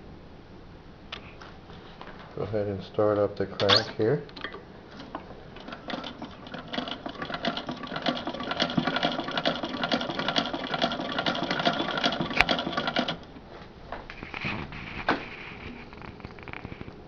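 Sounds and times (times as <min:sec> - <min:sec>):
sharp click: 0:03.6 - 0:04.6
sewing machine clatter: 0:05.0 - 0:13.3.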